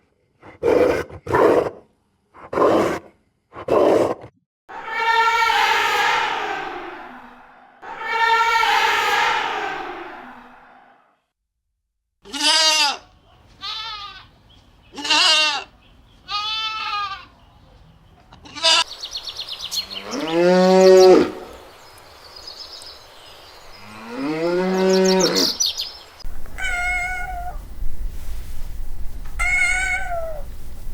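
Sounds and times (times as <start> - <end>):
sheep bleating: 12.2 - 14.3, 15.0 - 15.7, 16.3 - 17.3, 18.4 - 18.9
cat meowing: 26.4 - 27.7, 29.4 - 30.6.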